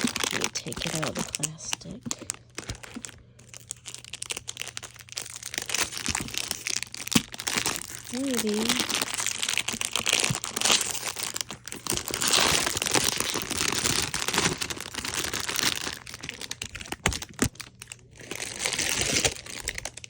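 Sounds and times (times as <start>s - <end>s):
plastic wrap crinkling and tearing: 0.0s - 20.0s.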